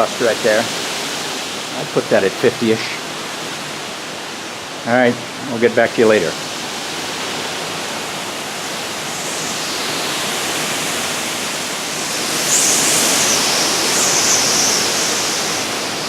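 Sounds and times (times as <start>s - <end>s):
strong wind rushing: 0.0s - 16.0s
high wavering wind whistle: 8.4s - 16.0s.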